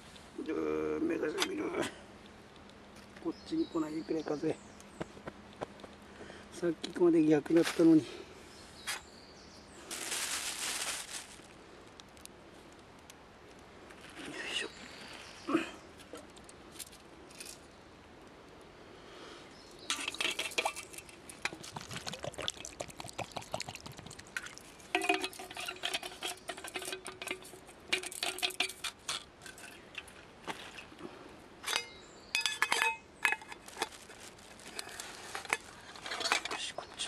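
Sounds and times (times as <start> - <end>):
metal cookware clattering: 19.9 - 21.6, 24.9 - 29.8, 31.7 - 33.6, 35.4 - 36.7.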